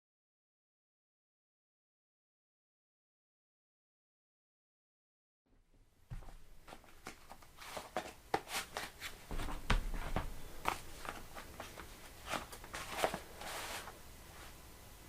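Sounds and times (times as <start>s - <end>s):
rustling: 6.1s - 14.6s.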